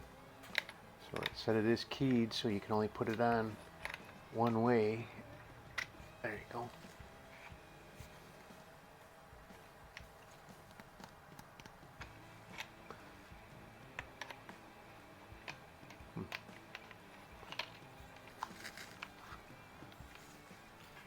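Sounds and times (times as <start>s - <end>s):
metal parts clicking and tapping: 0.5s - 5.1s, 13.9s - 14.6s, 15.4s - 21.0s.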